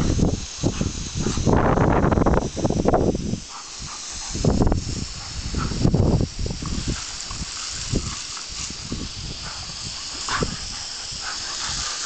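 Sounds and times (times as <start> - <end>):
garden hose spray hissing: 0.0 - 12.0
water splashing: 6.3 - 12.0.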